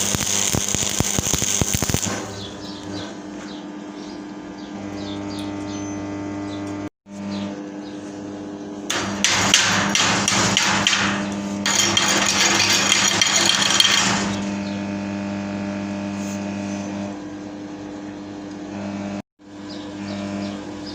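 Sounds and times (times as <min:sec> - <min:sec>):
crackling and knocking metalwork: 0:00.0 - 0:03.2, 0:08.9 - 0:14.6
electrical hum: 0:00.0 - 0:20.9.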